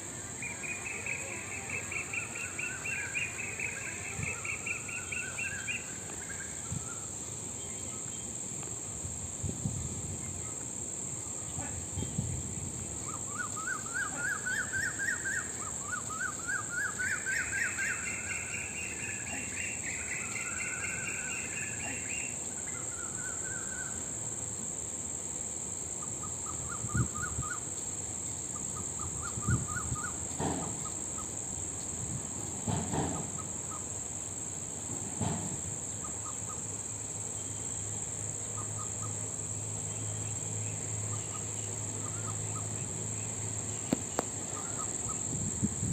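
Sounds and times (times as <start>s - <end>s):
high-pitched insect drone: 0.0s - 45.9s.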